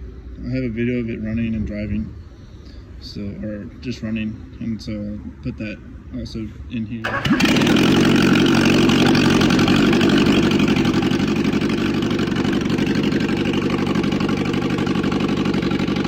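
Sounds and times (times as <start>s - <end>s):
car engine running: 7.1s - 16.0s.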